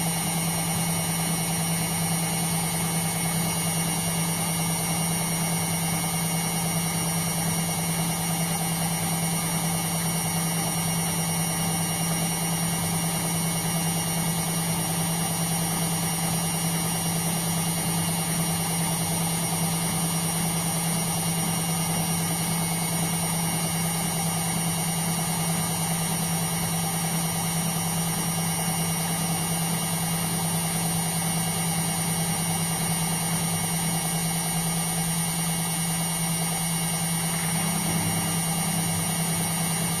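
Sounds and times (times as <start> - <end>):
washing machine humming: 0.0 - 40.0.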